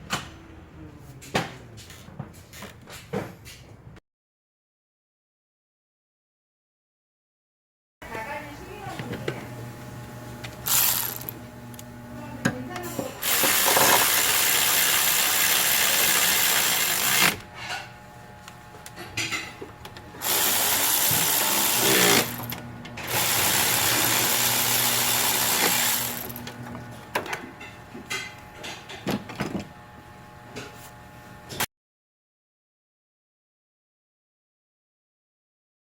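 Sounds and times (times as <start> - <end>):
handheld power tool running: 8.8 - 31.7.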